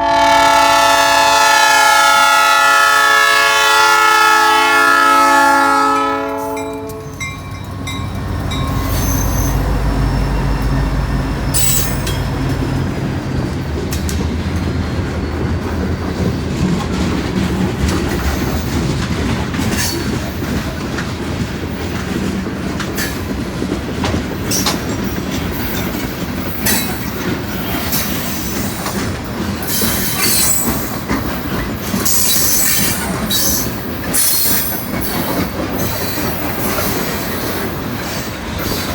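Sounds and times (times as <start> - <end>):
locomotive horn: 0.0 - 7.2
locomotives rumbling past: 4.6 - 38.9
train wheels clacking on rails: 4.9 - 38.9
wheels squealing: 7.1 - 19.0.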